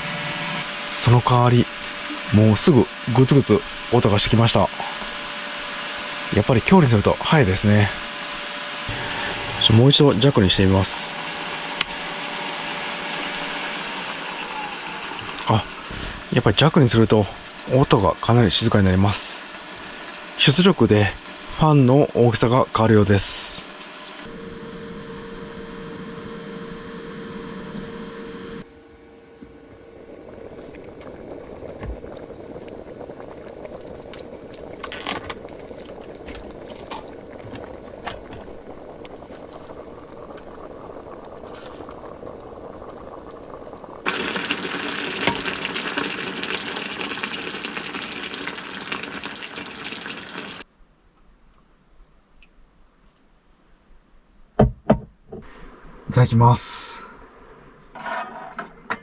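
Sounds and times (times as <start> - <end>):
cooling fan hum: 0.0 - 50.6
hot pot bubbling: 0.6 - 7.9, 8.8 - 20.1, 29.6 - 50.7
loud hiss: 8.9 - 10.4, 44.1 - 50.6.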